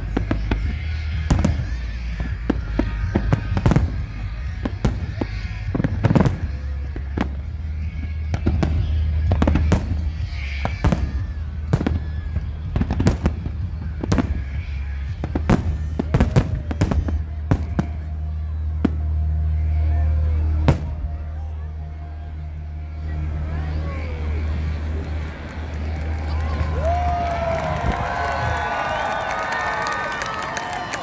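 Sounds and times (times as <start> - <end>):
steady low rumble: 0.0 - 29.1
fireworks bangs and crackles: 0.0 - 31.0.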